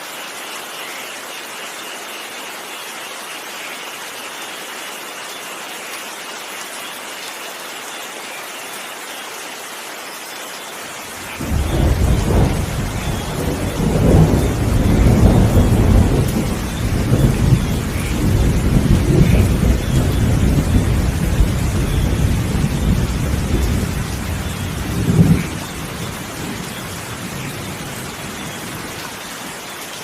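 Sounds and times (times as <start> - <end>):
steady rain falling: 0.0 - 30.0
rolling thunder rumble: 11.3 - 28.8.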